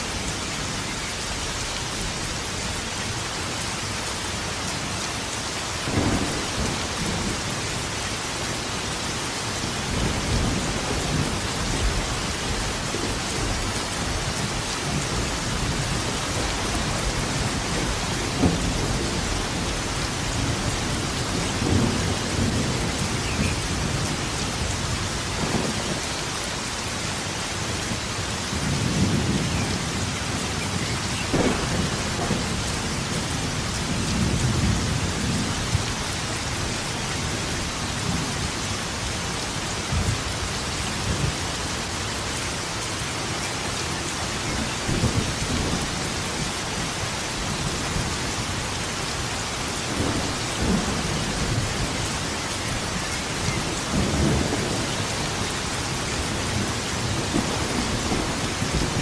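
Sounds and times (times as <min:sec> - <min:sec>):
heavy rain: 0:00.0 - 0:59.0
thunder rolling: 0:05.9 - 0:07.6, 0:09.9 - 0:24.2, 0:28.7 - 0:35.9.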